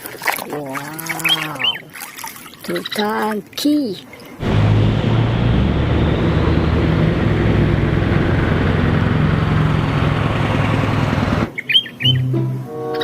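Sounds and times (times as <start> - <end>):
truck engine running: 4.4 - 11.5.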